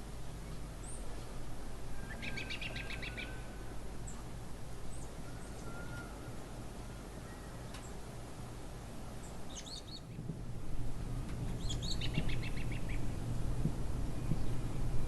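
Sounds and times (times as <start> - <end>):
low background rumble: 8.4 - 15.0
small birds chirping: 9.2 - 10.2, 11.5 - 13.0.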